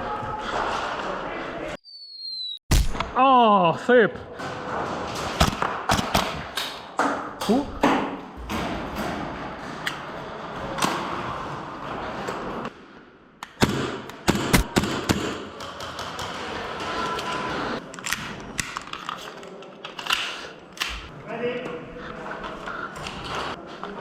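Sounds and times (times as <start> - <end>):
airsoft guns firing: 13.6 - 15.8.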